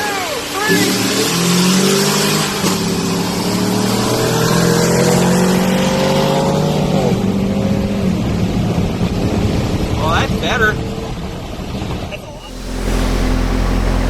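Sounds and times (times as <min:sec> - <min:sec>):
car engine revving: 0:00.6 - 0:07.7, 0:12.3 - 0:14.0.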